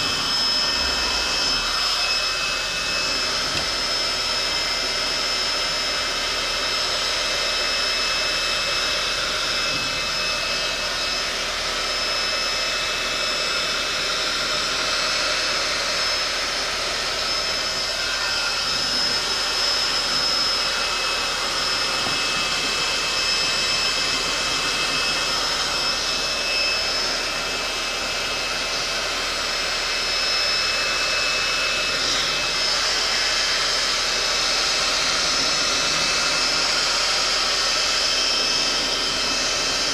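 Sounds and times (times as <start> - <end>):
heat gun fan blowing: 0.0 - 39.9.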